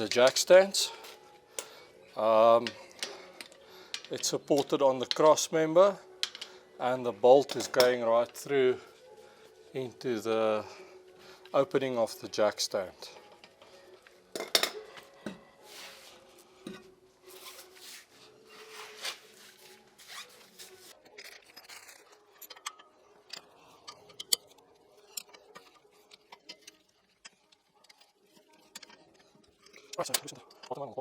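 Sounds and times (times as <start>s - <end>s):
metal tools clicking and clinking: 6.2s - 6.6s, 7.4s - 8.4s, 21.0s - 31.0s.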